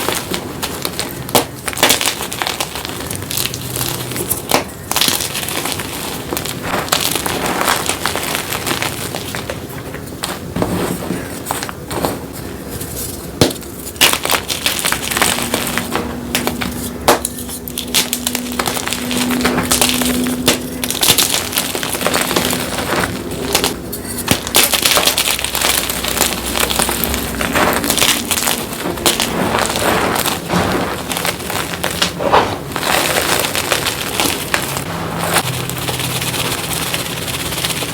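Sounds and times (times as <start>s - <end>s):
chalk crushed by hand crackling: 0.0s - 12.2s, 12.8s - 37.9s.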